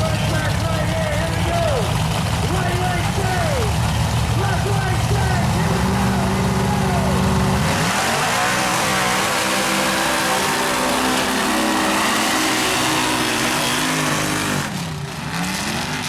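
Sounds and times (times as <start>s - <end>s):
truck engine revving: 0.0s - 16.0s.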